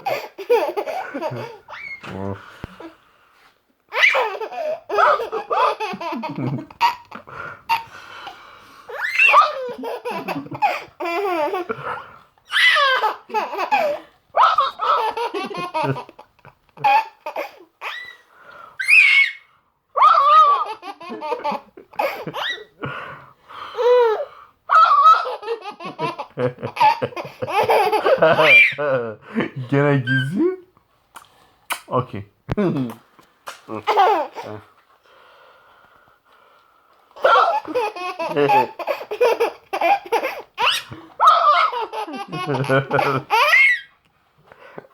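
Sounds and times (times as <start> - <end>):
baby laughing: 0.0 - 2.2, 3.9 - 7.9, 8.9 - 11.9, 12.5 - 18.2, 20.0 - 22.8, 23.8 - 29.0, 33.8 - 34.6, 37.2 - 43.9.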